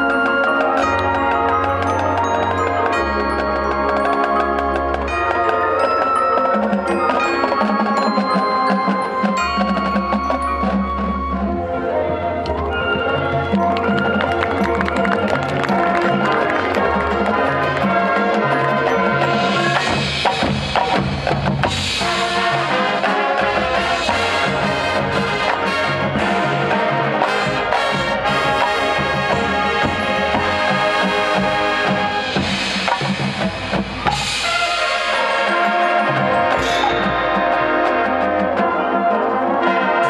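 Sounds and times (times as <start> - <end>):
marching band playing: 0.0 - 40.0
drum hits: 27.3 - 34.6.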